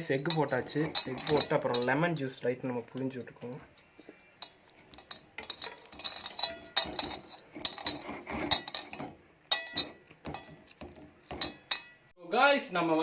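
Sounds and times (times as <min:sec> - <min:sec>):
utensil clinking against bowl: 0:00.0 - 0:02.3, 0:03.2 - 0:12.0.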